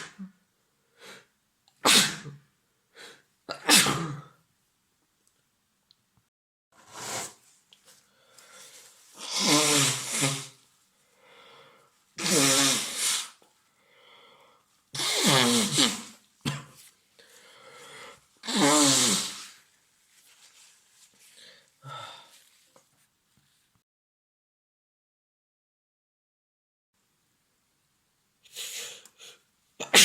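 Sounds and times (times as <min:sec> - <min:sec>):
breaths: 0:00.8 - 0:01.4, 0:02.9 - 0:03.3, 0:07.9 - 0:09.3, 0:10.9 - 0:12.0, 0:13.6 - 0:14.8, 0:17.2 - 0:18.3, 0:21.2 - 0:22.8
man sneezing: 0:01.8 - 0:02.4, 0:03.5 - 0:04.4, 0:15.0 - 0:16.7, 0:18.4 - 0:19.6, 0:29.8 - 0:30.0.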